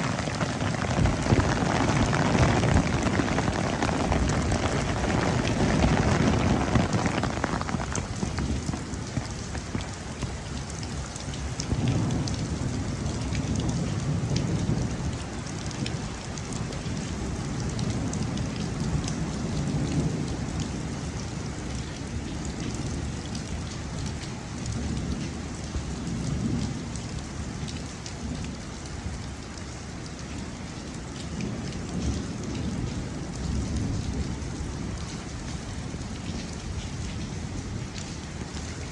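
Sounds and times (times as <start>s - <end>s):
thunder rumbling: 0.0s - 10.3s
heavy rain pouring: 0.0s - 38.9s.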